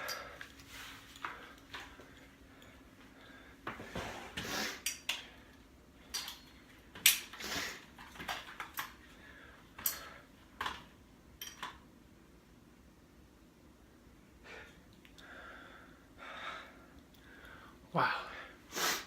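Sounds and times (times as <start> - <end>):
man breathing heavily: 0.0 - 5.6, 9.0 - 10.4, 14.4 - 19.0.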